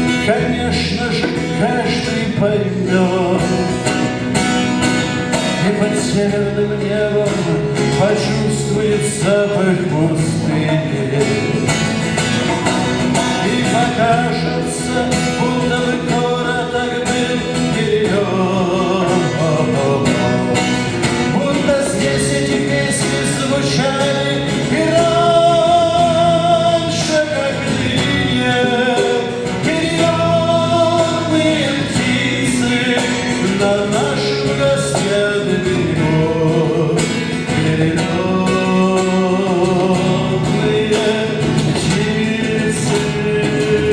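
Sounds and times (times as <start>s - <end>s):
acoustic guitar: 0.0s - 43.9s
man singing: 0.0s - 43.9s.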